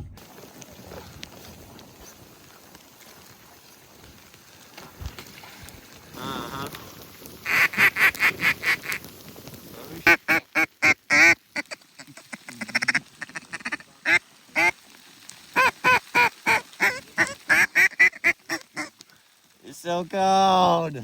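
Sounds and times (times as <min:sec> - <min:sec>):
ducks quacking: 0:07.4 - 0:09.0, 0:09.8 - 0:14.8, 0:15.5 - 0:19.0.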